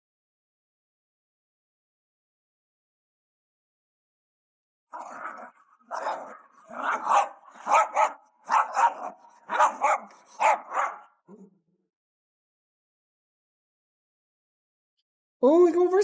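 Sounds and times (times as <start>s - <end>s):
dog barking: 4.9s - 11.4s.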